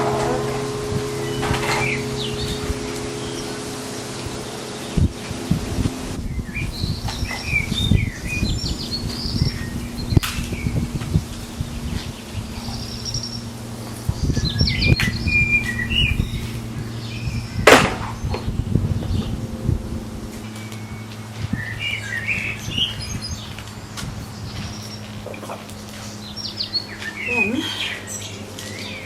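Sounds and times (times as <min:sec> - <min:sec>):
low knocks: 0:00.0 - 0:07.4
loud rush of noise: 0:00.0 - 0:27.6
low steady hum: 0:00.0 - 0:29.0
small songbirds chirping: 0:00.0 - 0:29.0.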